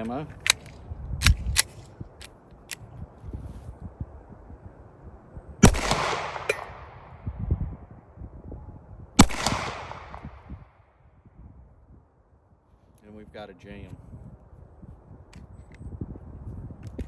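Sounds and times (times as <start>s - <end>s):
pistol slide cycling: 0.3s - 2.9s
pistol shots with echo: 5.6s - 7.2s, 9.2s - 10.5s.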